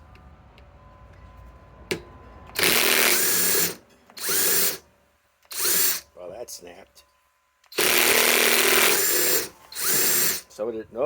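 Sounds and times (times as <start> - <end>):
impact wrench hammering: 1.9 - 4.8.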